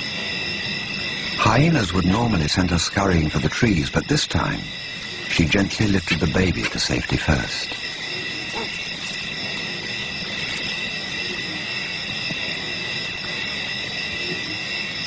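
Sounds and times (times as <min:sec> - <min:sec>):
high-pitched chorus of tones: 0:00.0 - 0:15.0
leopard growling: 0:05.3 - 0:12.7.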